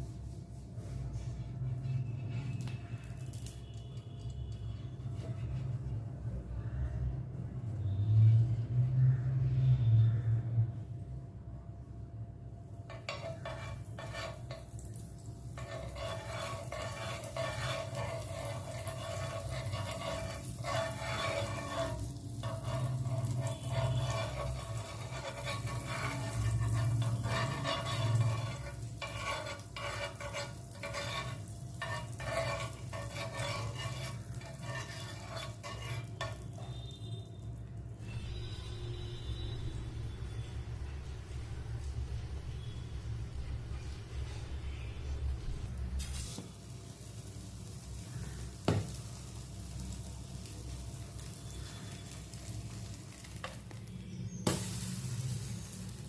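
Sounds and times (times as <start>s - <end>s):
utensil scraping a dish: 12.9s - 14.8s, 15.5s - 37.0s.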